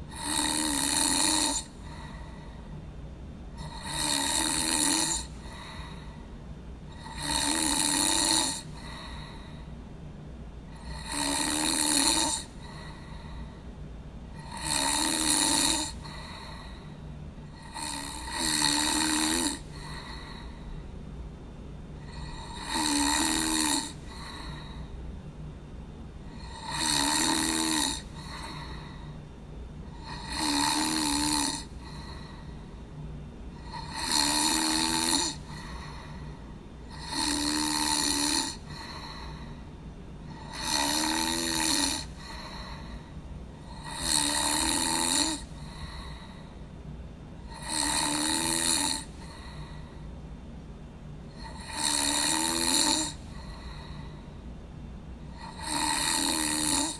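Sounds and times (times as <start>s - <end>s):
person snoring: 0.0s - 2.6s, 3.5s - 6.3s, 6.9s - 9.7s, 10.7s - 13.6s, 14.4s - 20.8s, 22.0s - 24.9s, 26.3s - 29.2s, 29.8s - 32.7s, 33.5s - 39.6s, 40.3s - 46.5s, 47.4s - 50.0s, 51.3s - 54.2s, 55.3s - 56.9s
steady low hum: 0.0s - 56.9s.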